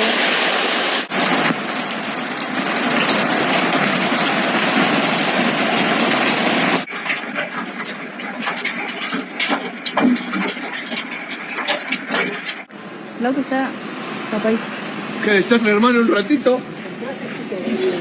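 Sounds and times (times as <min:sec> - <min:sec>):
roar of hail and rain: 0:00.0 - 0:12.0
hailstones clattering: 0:00.0 - 0:18.0.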